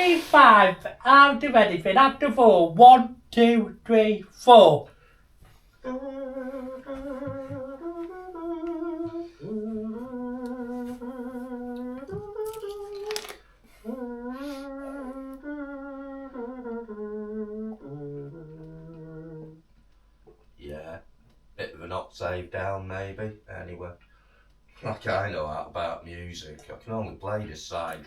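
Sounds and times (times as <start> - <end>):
person humming a slow hymn: 5.8 - 19.7.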